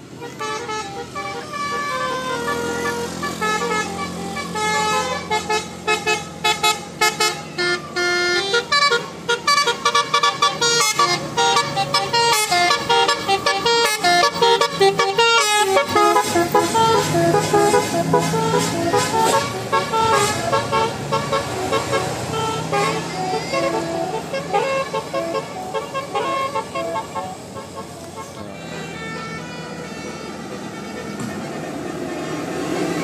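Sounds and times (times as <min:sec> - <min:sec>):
multi-tone bus horn melody: 0:00.0 - 0:33.0.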